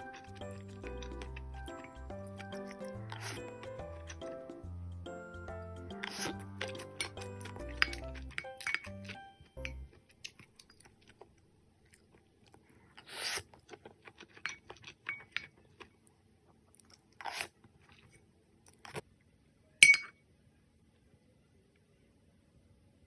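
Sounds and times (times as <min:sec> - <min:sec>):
utensil clinking against dish: 0:06.6 - 0:09.8.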